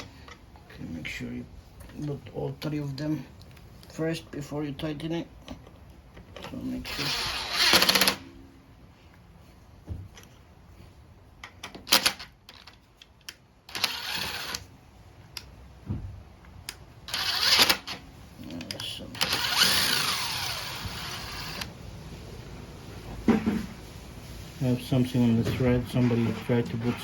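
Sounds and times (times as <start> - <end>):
scraping and rustling: 17.1 - 27.0.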